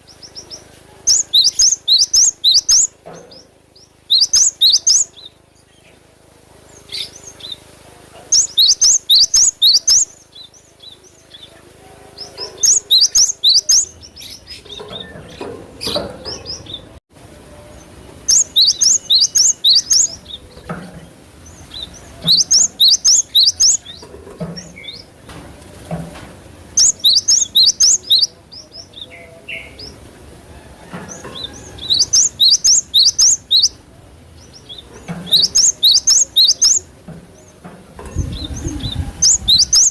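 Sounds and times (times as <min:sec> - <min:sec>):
bird singing high falling notes: 0:04.1 - 0:05.4, 0:17.6 - 0:20.4.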